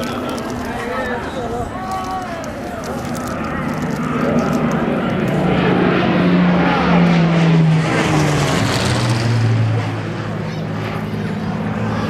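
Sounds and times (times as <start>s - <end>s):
propeller plane engine passing overhead: 0.0s - 12.0s.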